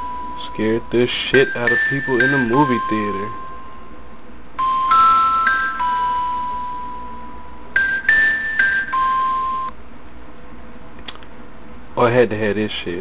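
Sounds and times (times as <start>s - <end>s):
bell-like phone ringtone: 0.0s - 4.0s, 4.6s - 9.7s.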